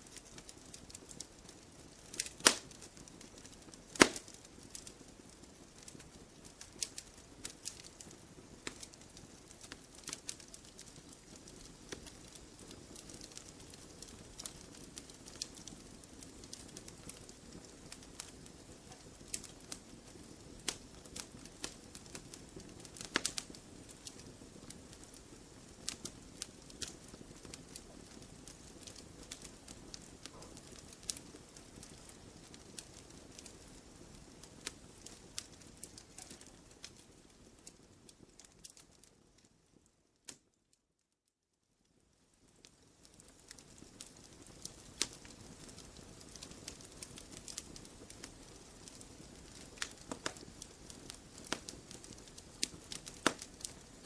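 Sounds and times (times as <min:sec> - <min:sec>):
campfire crackling: 0:00.0 - 0:40.5, 0:41.9 - 0:54.0
fire hissing: 0:00.1 - 0:37.0, 0:43.5 - 0:54.0
sharp popping of logs: 0:02.2 - 0:02.7, 0:04.0 - 0:04.3.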